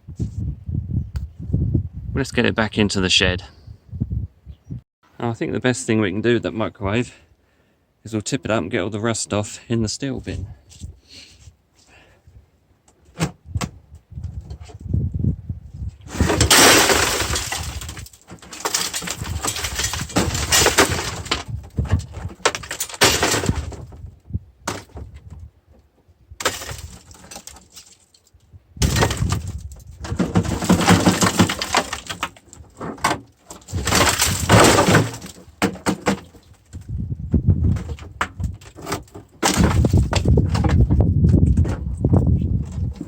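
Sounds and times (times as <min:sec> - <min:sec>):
debris clattering into metal bin: 0:16.1 - 0:24.0, 0:26.4 - 0:28.2, 0:28.8 - 0:36.6, 0:37.7 - 0:40.9.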